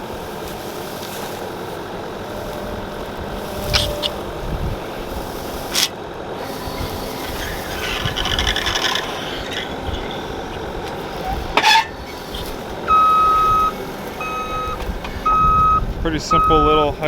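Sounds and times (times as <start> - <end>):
skid steer running: 0.0 - 17.0
rasping scrape: 5.3 - 10.4, 11.2 - 12.7
reversing alarm beeping: 12.8 - 17.0.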